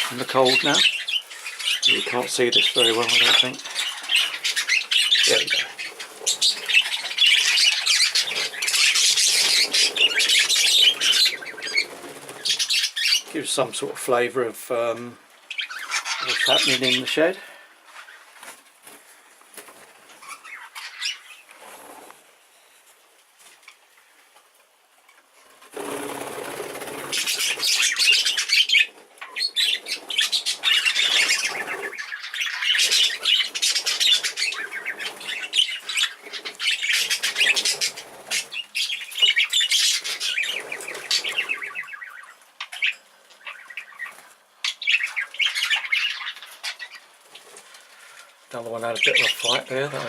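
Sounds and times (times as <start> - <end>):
wings fluttering: 0.0 - 13.3, 17.9 - 22.3, 25.4 - 48.4
budgerigars chattering: 0.0 - 13.7, 15.5 - 17.4, 25.8 - 47.1, 48.6 - 50.0.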